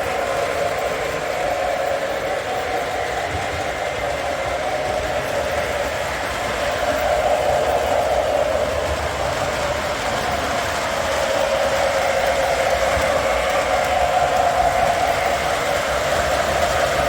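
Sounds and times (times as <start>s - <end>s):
model train motor hum: 0.0s - 17.0s
wheels rumbling on rail: 0.0s - 17.0s.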